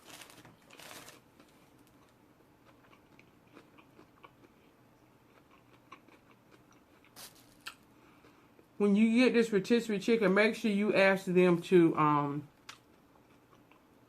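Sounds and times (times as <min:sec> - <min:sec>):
mouth chewing: 0:02.6 - 0:04.7, 0:05.3 - 0:07.8, 0:12.7 - 0:13.9.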